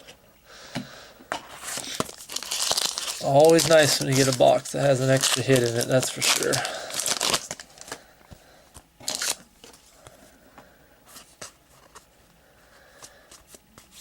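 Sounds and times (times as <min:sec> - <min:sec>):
wrapper rustle: 0:01.6 - 0:08.0, 0:09.0 - 0:09.9.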